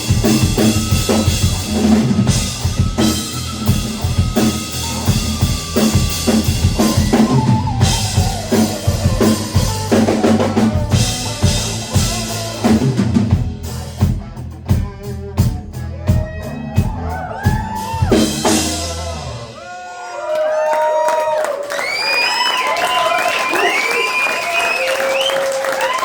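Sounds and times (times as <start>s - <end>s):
drum kit beat: 0.0s - 19.7s
live rock band playing: 0.0s - 19.7s.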